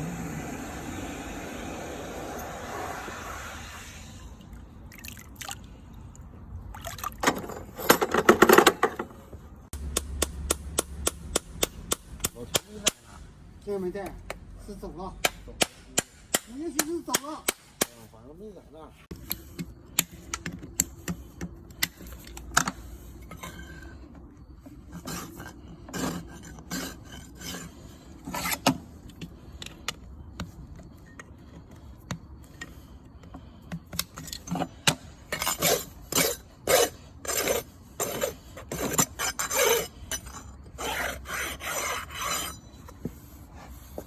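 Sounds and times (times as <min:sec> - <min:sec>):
rasp filing a hoof: 0:20.7 - 0:29.4, 0:34.5 - 0:44.0.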